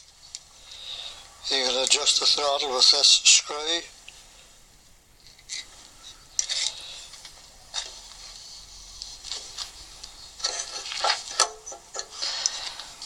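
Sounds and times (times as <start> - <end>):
hands scraping and clicking on parts: 5.2 - 13.0.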